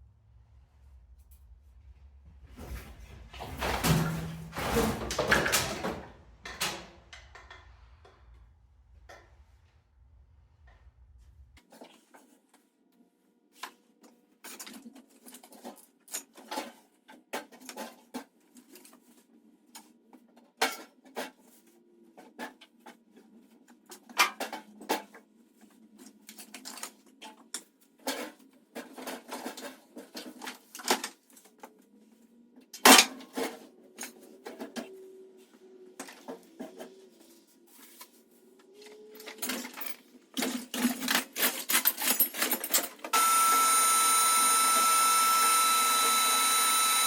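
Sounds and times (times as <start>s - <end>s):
metallic tools clinking: 39.2s - 43.1s.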